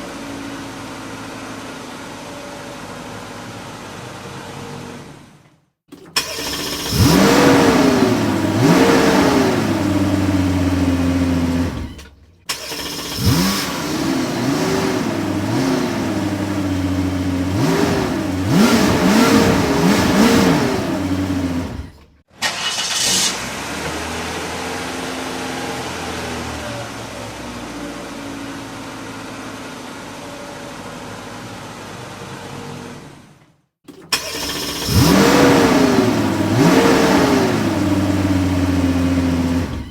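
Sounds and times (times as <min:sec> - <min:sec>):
engine running steadily: 0:06.0 - 0:22.1, 0:34.0 - 0:39.9
car engine revving: 0:06.2 - 0:29.4, 0:34.1 - 0:39.9
brief hiss: 0:22.4 - 0:23.6.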